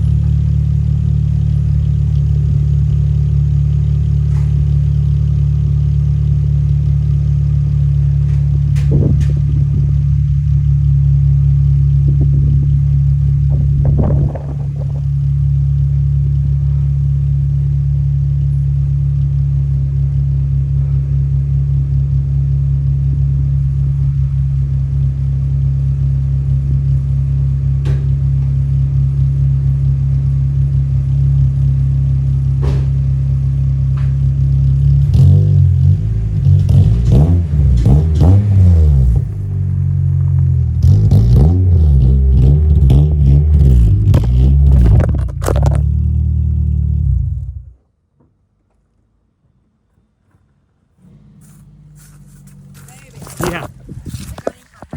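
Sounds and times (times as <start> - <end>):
engine clicks and knocks: 0.0 - 19.4, 27.7 - 28.7, 31.4 - 41.5, 42.4 - 46.2
car engine idling and revving: 0.0 - 54.9.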